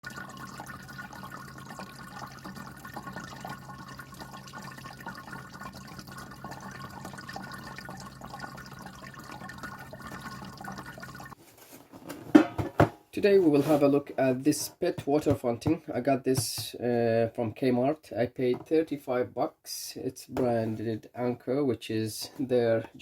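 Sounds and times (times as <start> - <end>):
water trickling and splashing: 0.0 - 11.4.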